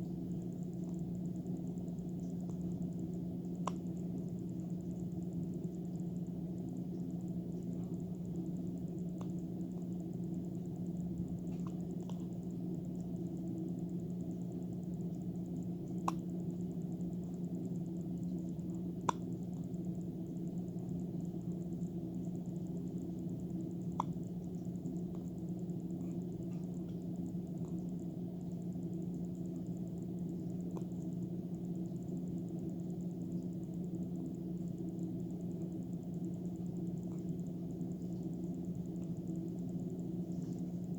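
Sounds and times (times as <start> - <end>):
low background hum: 0.0 - 40.9.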